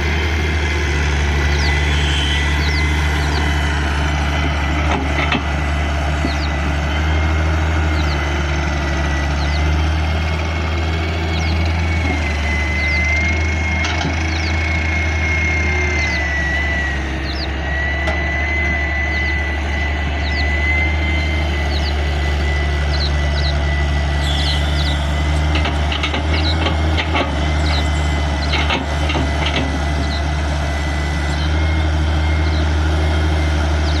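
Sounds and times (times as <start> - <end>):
diesel engine running: 0.0 - 34.0
thin high whine: 1.7 - 3.4, 14.6 - 25.4.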